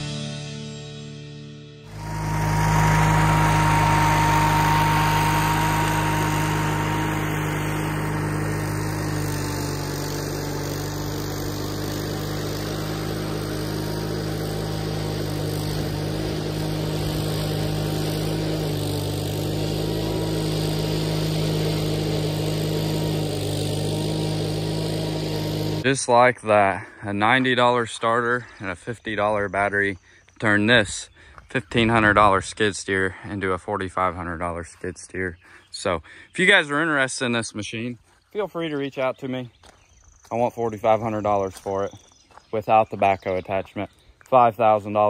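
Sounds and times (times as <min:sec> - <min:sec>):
skid steer engine running: 0:01.9 - 0:26.0.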